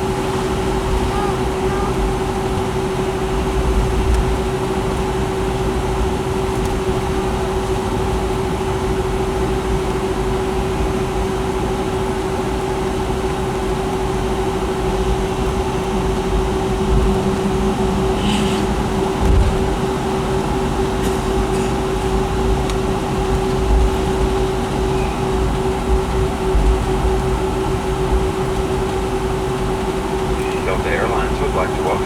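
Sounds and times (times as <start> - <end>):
airplane cabin hum: 0.0 - 32.0.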